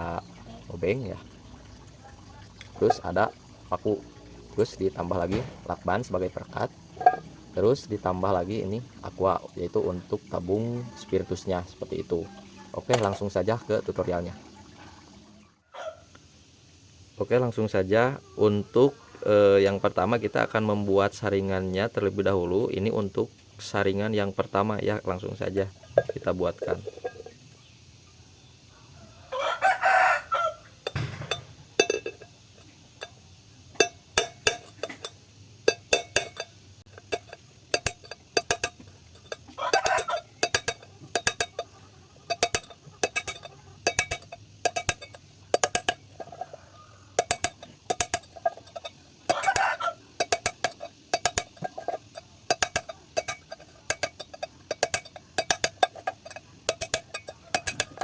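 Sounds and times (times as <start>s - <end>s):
rooster crowing: 15.4s - 16.2s, 28.7s - 30.8s, 39.5s - 40.5s, 46.2s - 47.2s, 49.3s - 50.2s
metallic clicks and taps on tin: 30.8s - 58.0s.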